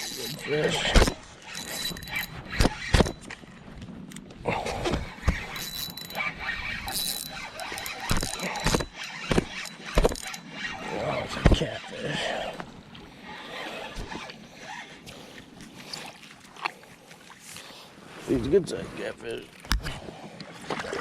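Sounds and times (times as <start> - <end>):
fishing reel drag squealing: 0.0 - 3.3, 5.0 - 15.0.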